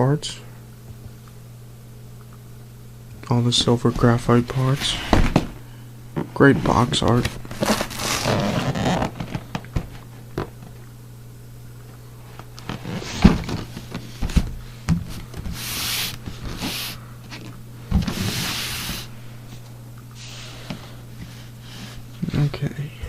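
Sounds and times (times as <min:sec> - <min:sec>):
steady low hum: 0:00.0 - 0:23.0
cardboard sliding and rubbing: 0:07.5 - 0:09.3, 0:15.5 - 0:17.0, 0:18.0 - 0:19.1.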